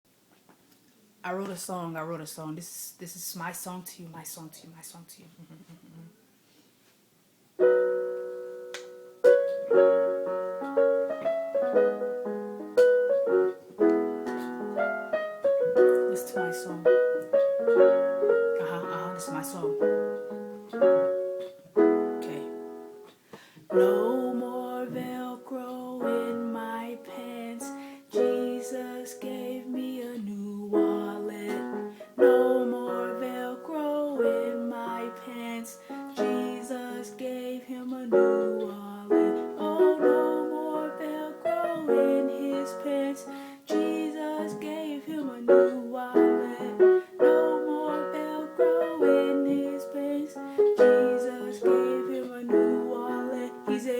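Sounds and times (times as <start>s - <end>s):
ukulele strumming chords: 7.7s - 22.6s.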